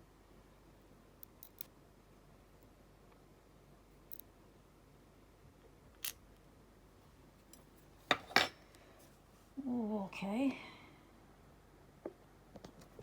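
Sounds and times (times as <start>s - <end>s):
small clicks of padlock parts: 1.2s - 1.7s, 4.1s - 4.3s, 6.0s - 6.2s.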